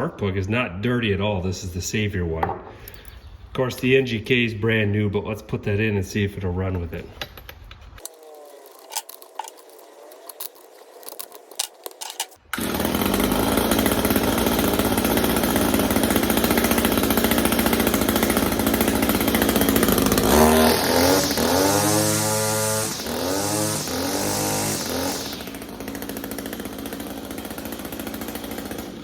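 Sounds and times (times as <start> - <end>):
string trimmer engine running: 7.2 - 29.0.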